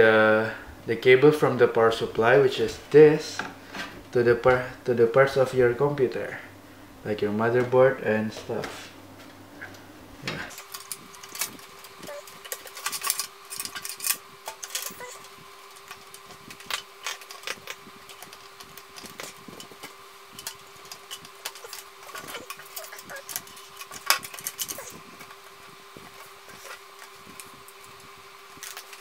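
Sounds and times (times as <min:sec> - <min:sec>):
faint steady hum: 0:00.0 - 0:29.0
cables and connectors clicking: 0:10.5 - 0:29.0.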